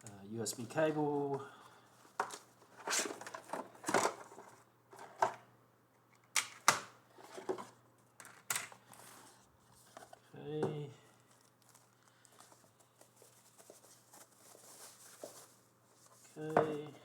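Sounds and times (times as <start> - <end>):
packaging rustling: 11.1 - 16.4.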